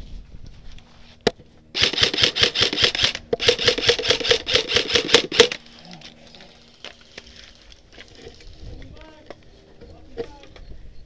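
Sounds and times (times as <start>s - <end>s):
airsoft rifle firing bursts: 1.8s - 5.6s.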